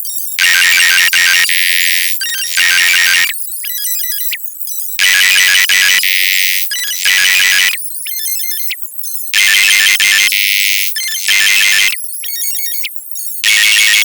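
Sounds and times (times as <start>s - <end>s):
sped-up song beeping tones: 0.4s - 3.3s, 5.0s - 7.8s, 9.4s - 12.0s.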